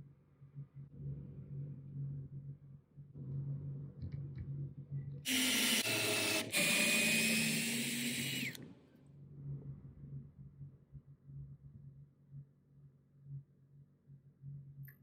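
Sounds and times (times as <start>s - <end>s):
cordless drill whining: 5.3s - 8.7s.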